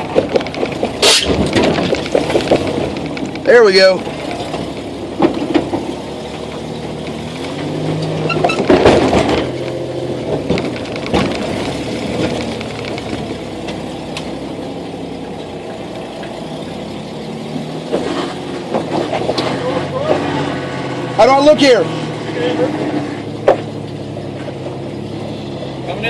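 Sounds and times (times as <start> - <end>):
engine revving: 0.0 - 26.0
sharp knocks: 10.4 - 13.8.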